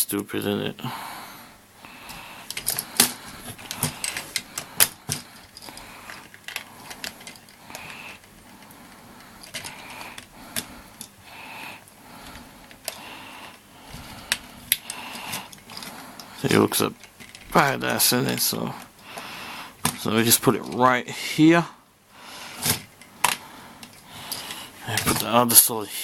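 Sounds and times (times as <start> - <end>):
plastic toy parts clicking: 2.4 - 8.8, 9.4 - 11.2.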